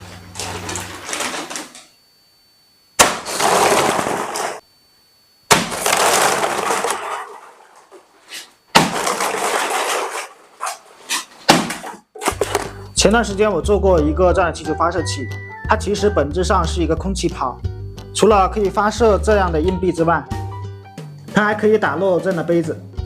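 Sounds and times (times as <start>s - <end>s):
loud crash and clattering: 3.0s - 4.6s, 5.5s - 7.8s, 8.8s - 10.4s.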